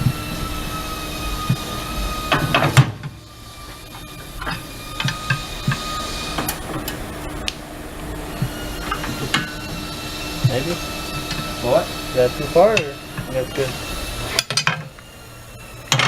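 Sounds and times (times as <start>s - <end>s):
steady machine hum: 0.0s - 16.0s
metal clanks and knocks: 2.3s - 7.0s, 8.4s - 9.8s, 14.3s - 15.0s.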